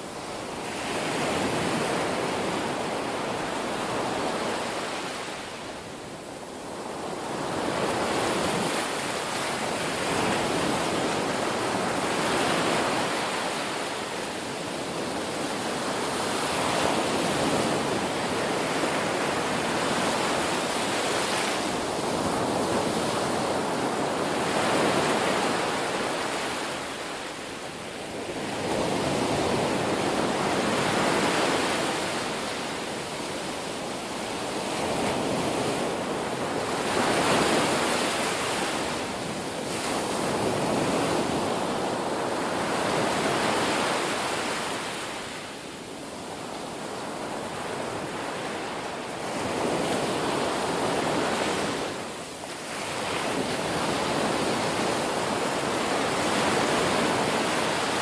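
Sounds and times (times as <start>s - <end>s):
ocean waves breaking on shore: 0.0s - 58.0s.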